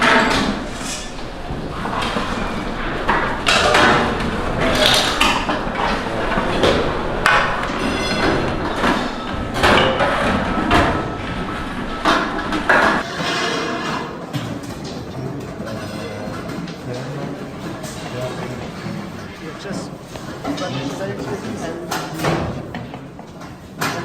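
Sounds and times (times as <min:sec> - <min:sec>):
background noise: 0:00.0 - 0:24.0.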